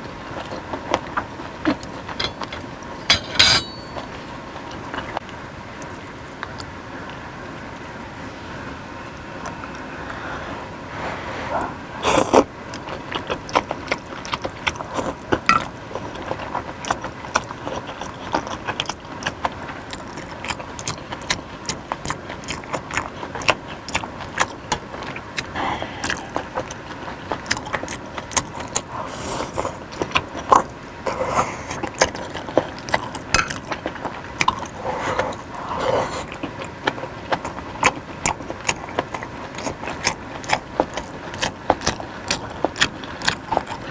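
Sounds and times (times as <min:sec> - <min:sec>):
mouth eating smacks: 0:20.1 - 0:43.9.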